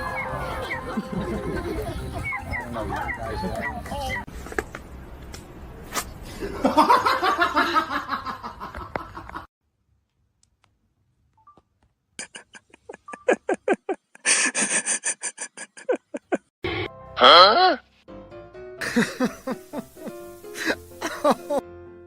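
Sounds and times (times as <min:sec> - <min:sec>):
bursts of laughter: 0:00.0 - 0:04.3, 0:18.8 - 0:21.6.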